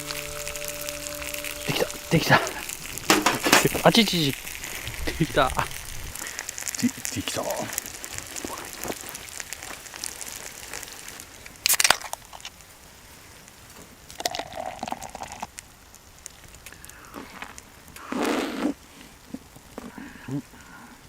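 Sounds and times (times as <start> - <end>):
short hum: 0.0 - 6.4
wood fire crackling: 0.0 - 21.0
handling noise rustles: 2.2 - 6.7.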